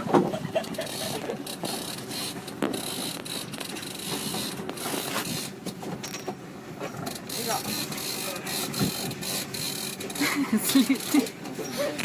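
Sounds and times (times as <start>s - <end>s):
fishing reel clicking and whirring: 0.6s - 5.5s, 7.0s - 11.4s.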